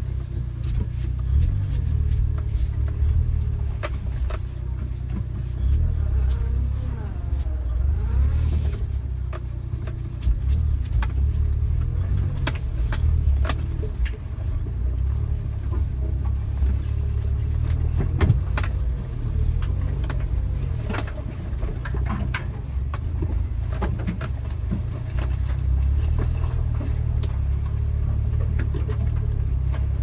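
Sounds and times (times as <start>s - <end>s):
vehicle engine rumble: 0.0s - 30.0s
knocks and rattles: 8.6s - 30.0s.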